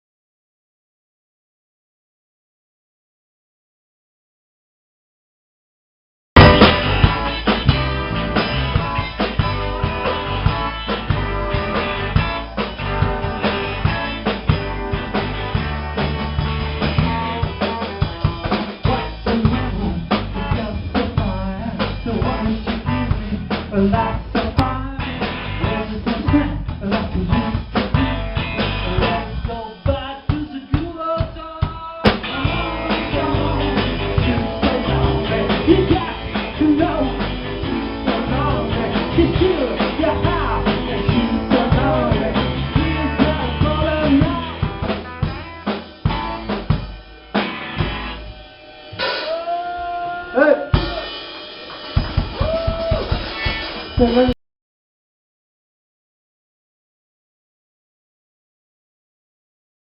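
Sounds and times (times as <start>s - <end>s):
bass drum: 6.4s - 47.0s, 51.8s - 54.4s
rock band playing: 6.4s - 54.4s.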